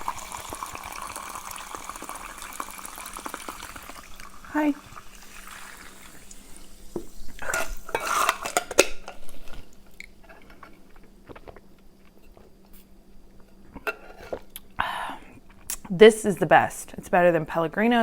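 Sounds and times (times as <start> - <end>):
dishes and utensils clinking: 7.4 - 9.3.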